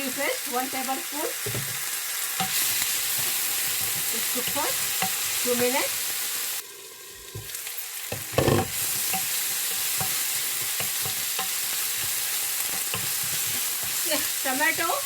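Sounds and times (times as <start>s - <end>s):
food sizzling in oil: 0.0s - 15.0s
pan knock: 8.4s - 8.8s.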